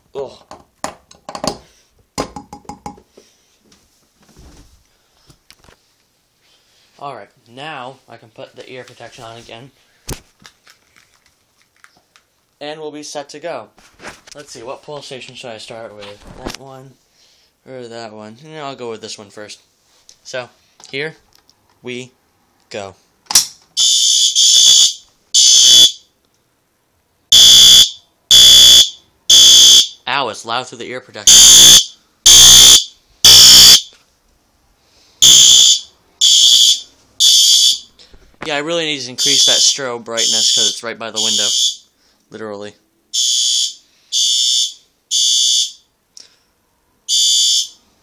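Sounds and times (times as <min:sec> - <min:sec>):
fire alarm horns blasting: 0:23.8 - 0:26.0, 0:27.3 - 0:30.0, 0:31.3 - 0:33.9, 0:35.2 - 0:37.9, 0:39.2 - 0:41.9, 0:43.1 - 0:45.9, 0:47.1 - 0:47.8.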